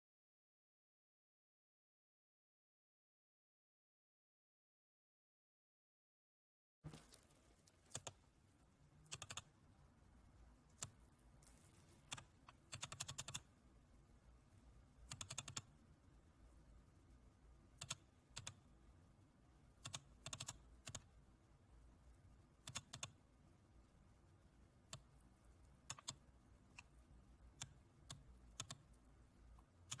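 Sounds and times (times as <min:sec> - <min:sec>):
faint steady hiss: 0:06.8 - 0:30.0.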